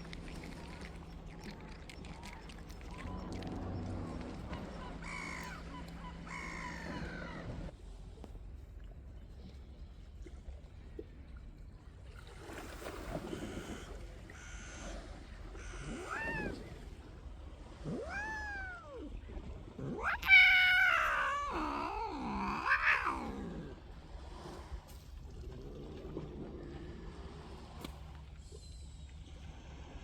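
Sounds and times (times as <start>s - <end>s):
cat meowing: 15.6s - 16.6s, 17.9s - 19.1s, 19.8s - 23.8s.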